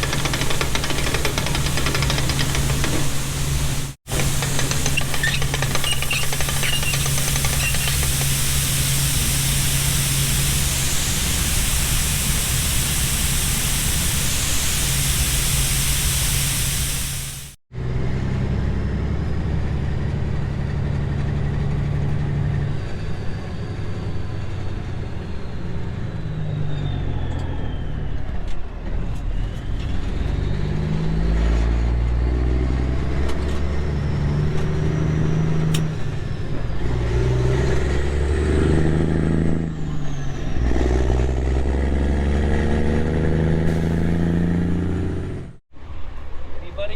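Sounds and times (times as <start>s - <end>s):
truck engine shifting gears: 0.0s - 16.0s, 16.9s - 45.6s
loud steady hiss: 0.0s - 17.6s.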